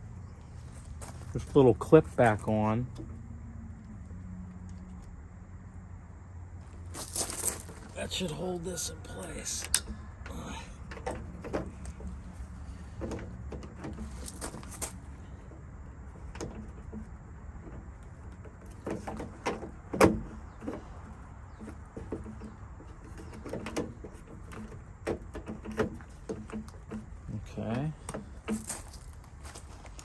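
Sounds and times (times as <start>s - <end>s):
clicks and metallic knocks: 9.2s - 12.3s.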